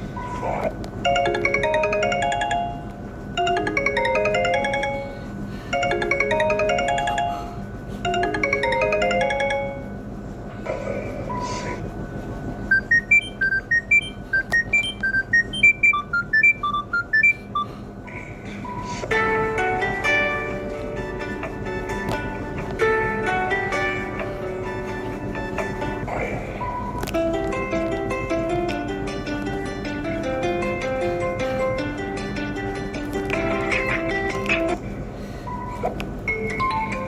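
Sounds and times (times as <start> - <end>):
phone ringtone melody: 1.0 - 10.2, 12.7 - 17.7, 19.0 - 26.1, 27.1 - 34.8, 36.3 - 37.0
quick high ringtone notes: 1.1 - 10.1.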